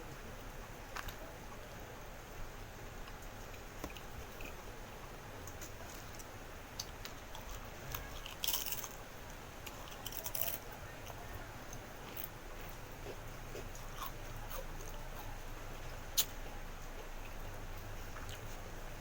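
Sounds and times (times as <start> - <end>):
person chewing food: 3.0 - 4.8, 5.4 - 15.4, 18.1 - 18.6
loud food crunches: 6.8 - 11.2.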